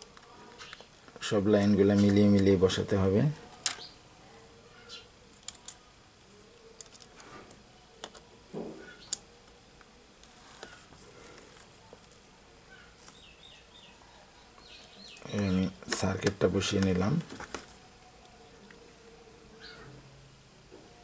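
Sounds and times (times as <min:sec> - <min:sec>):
birds chirping: 0:00.2 - 0:05.2, 0:07.6 - 0:09.7, 0:12.6 - 0:20.1.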